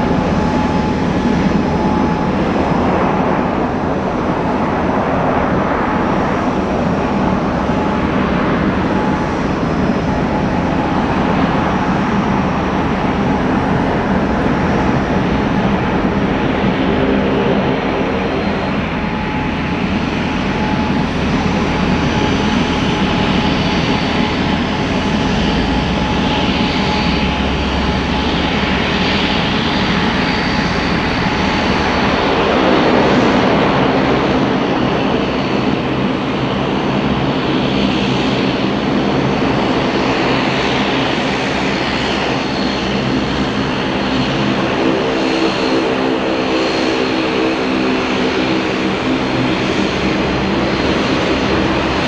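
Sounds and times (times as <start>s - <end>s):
continuous rushing noise: 0.0s - 52.0s
jet engine whine: 0.0s - 52.0s
deep steady hum: 12.6s - 32.6s.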